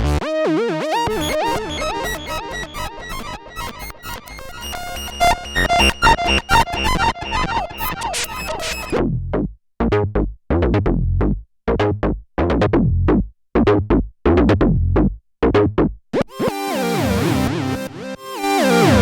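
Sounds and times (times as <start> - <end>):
synthesizer playing plucky notes: 1.0 - 9.0.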